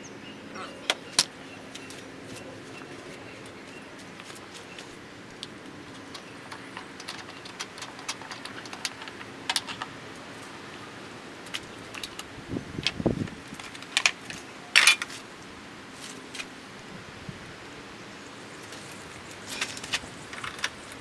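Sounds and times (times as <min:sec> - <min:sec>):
metal tools clinking: 0:00.9 - 0:12.3, 0:13.5 - 0:15.2, 0:18.6 - 0:21.0.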